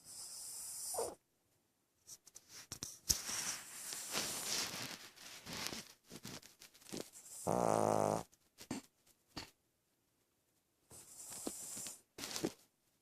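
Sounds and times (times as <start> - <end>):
dog snuffling breaths: 2.5 - 8.9, 10.9 - 12.5.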